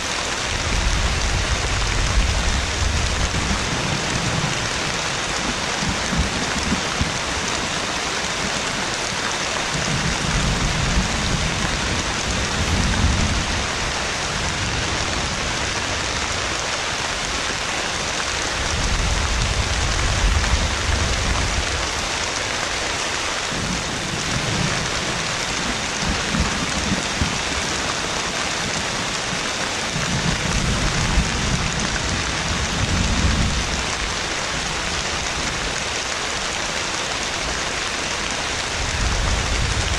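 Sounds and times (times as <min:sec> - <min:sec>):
heavy rain falling: 0:00.0 - 0:39.9
thunder rolling: 0:09.6 - 0:15.0, 0:23.5 - 0:34.8.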